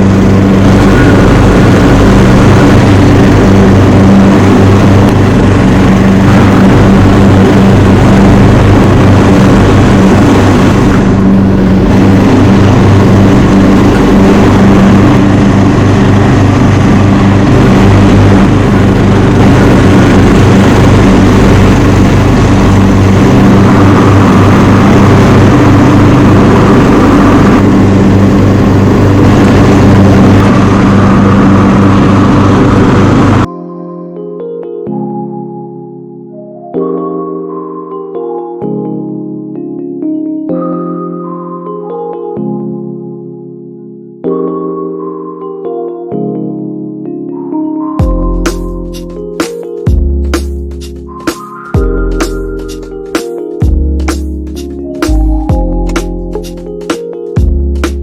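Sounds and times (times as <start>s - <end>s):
riding lawn mower engine running: 0.0s - 33.5s, 48.0s - 58.0s.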